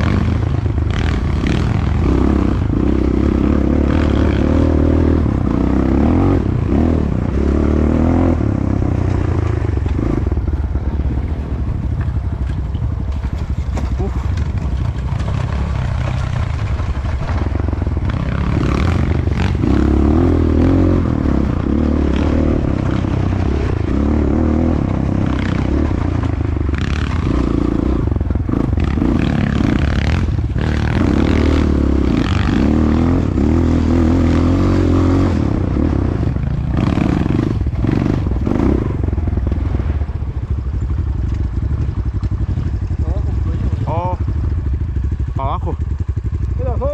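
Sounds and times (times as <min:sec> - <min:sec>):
motorcycle engine revving: 0:00.0 - 0:46.9
motorcycle clattering over rough ground: 0:08.1 - 0:24.0, 0:24.6 - 0:33.6, 0:35.5 - 0:46.9.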